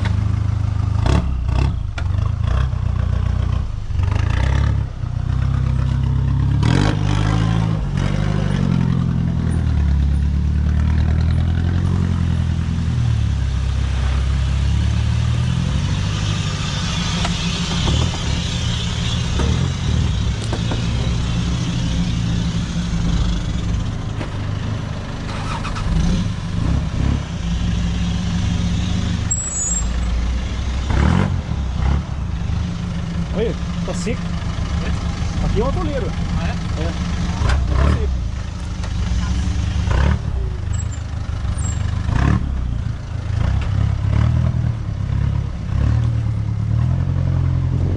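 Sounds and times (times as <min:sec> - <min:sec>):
diesel engine under load: 0:00.0 - 0:47.9.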